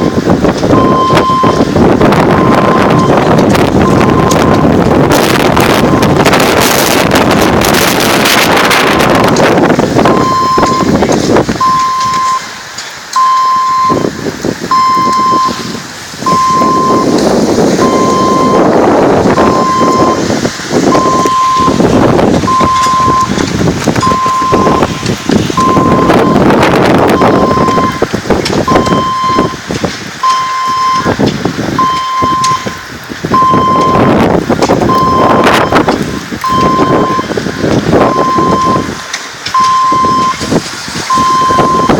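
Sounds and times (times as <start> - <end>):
rushing noise: 0.0 - 41.9
electronic beeping: 10.1 - 11.0, 11.6 - 12.4, 13.2 - 14.0, 14.7 - 15.7, 16.3 - 17.2, 17.8 - 18.7, 19.4 - 20.2, 20.9 - 21.8, 22.5 - 23.4, 24.0 - 25.0, 25.6 - 28.0, 28.7 - 29.6, 30.2 - 31.2, 31.8 - 32.8, 33.4 - 34.1, 34.9 - 37.3, 39.5 - 40.4, 41.1 - 41.9.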